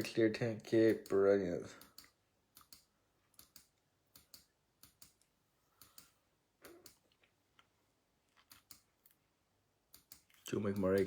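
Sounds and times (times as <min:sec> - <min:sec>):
faint computer clicking: 0:00.7 - 0:07.2, 0:09.9 - 0:11.0.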